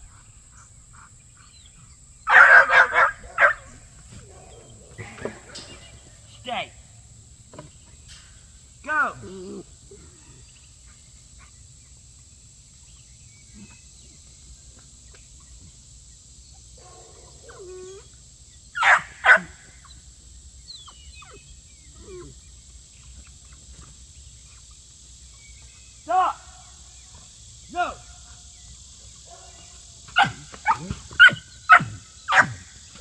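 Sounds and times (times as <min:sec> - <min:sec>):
dog barking: 0:02.3 - 0:06.1, 0:16.8 - 0:17.6, 0:18.8 - 0:19.6, 0:29.2 - 0:32.7.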